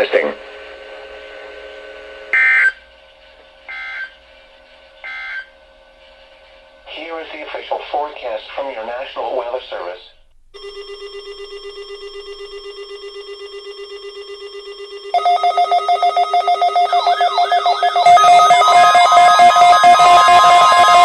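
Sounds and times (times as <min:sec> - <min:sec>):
warbling high electronic tone: 0:03.7 - 0:04.2, 0:05.0 - 0:05.5, 0:11.0 - 0:21.0
rapidly pulsing electronic tone: 0:10.6 - 0:21.0
fuller electronic layer: 0:11.4 - 0:21.0.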